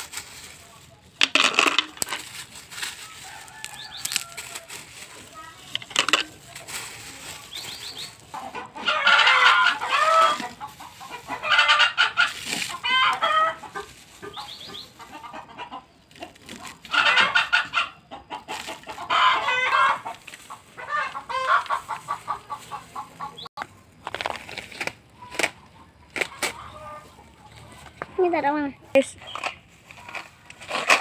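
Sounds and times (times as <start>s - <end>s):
chickens clucking and cackling: 0.0s - 31.0s.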